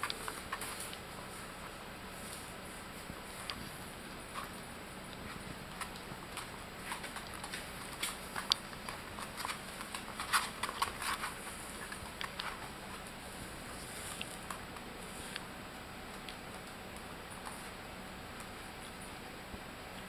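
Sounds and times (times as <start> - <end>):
puppy claws clicking and tapping: 4.3 - 13.2, 16.1 - 17.8.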